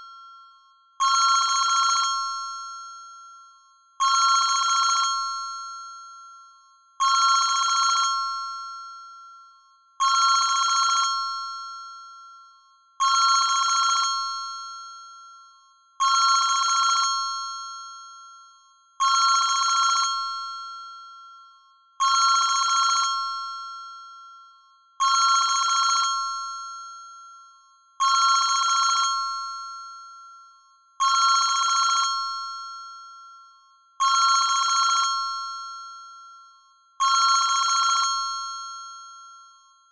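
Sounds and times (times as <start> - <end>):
trilling two-tone phone ringtone: 28.0 - 39.9.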